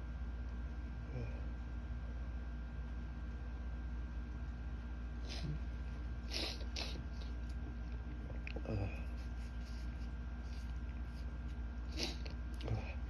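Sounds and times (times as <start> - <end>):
steady low hum: 0.0 - 13.0
person sniffing: 5.3 - 5.6, 6.3 - 7.0, 11.9 - 12.3.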